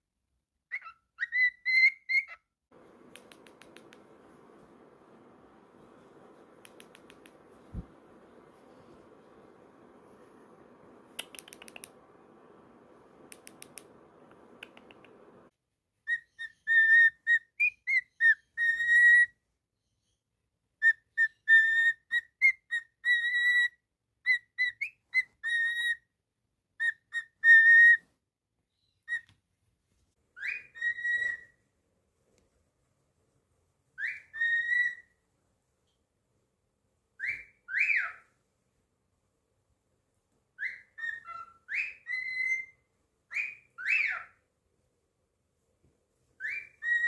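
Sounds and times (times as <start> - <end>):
cockatiel whistling a tune: 0.7 - 2.4, 16.1 - 19.4, 20.8 - 26.1, 26.8 - 28.0, 30.4 - 31.6, 34.0 - 35.1, 37.2 - 38.2, 40.6 - 44.4, 46.4 - 47.0
faint clicks: 2.8 - 4.8, 6.4 - 8.0, 11.0 - 12.2, 13.2 - 15.5
low hum: 2.8 - 15.5.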